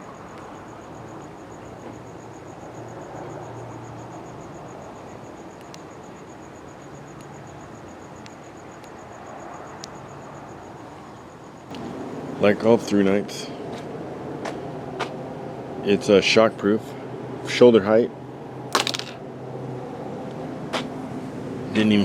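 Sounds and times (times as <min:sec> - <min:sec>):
cricket chirping: 0:00.0 - 0:15.8.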